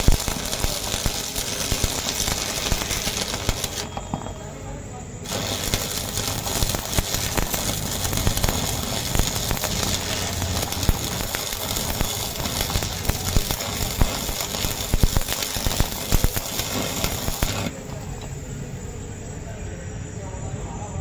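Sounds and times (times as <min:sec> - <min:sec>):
sharp pops: 0:00.0 - 0:04.6, 0:05.2 - 0:19.0
welding arc crackling and sputtering: 0:00.0 - 0:19.5.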